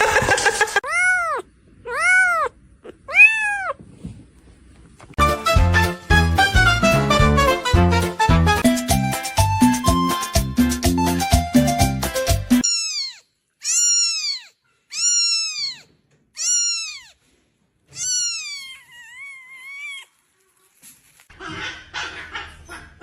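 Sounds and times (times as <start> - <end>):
cat meowing: 0.8 - 3.8, 12.6 - 17.2, 17.9 - 20.2.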